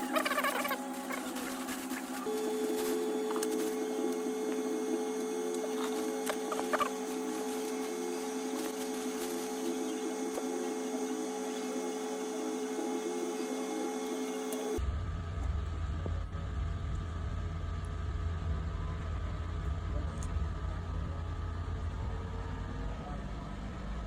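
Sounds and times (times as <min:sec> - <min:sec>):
hot air blower humming: 0:00.0 - 0:14.8.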